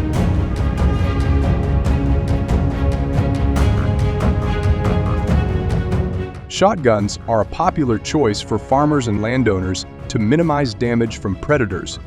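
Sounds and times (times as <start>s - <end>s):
music with driving beat: 0.0s - 6.4s.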